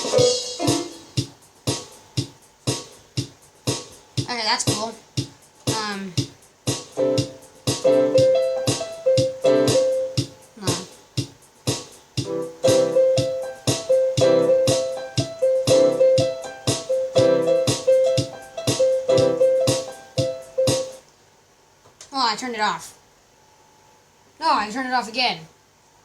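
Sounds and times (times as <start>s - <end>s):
electronic keyboard piano notes: 0.0s - 1.3s, 6.9s - 10.8s, 12.2s - 21.0s.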